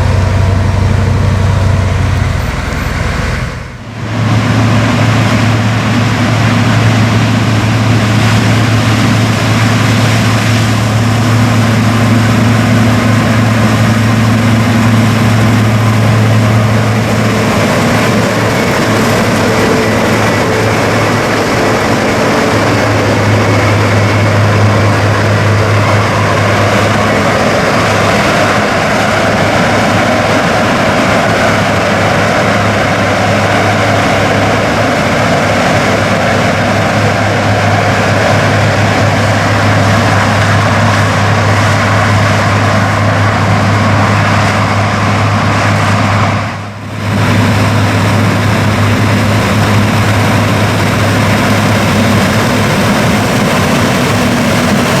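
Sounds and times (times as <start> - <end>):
low hum: 0.0 - 31.2
combine harvester running: 0.0 - 55.0.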